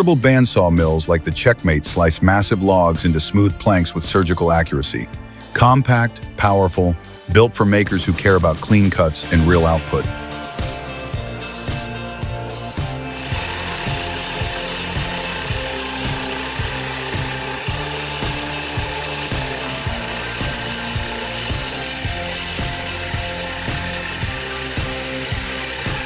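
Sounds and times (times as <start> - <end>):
music with steady beat: 0.0 - 26.0
saw cutting wood: 7.6 - 26.0.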